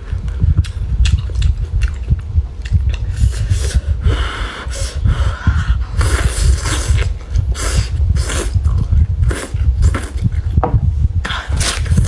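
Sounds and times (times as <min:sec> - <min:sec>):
chewing: 0:00.2 - 0:03.8
noodle slurping: 0:00.6 - 0:10.3.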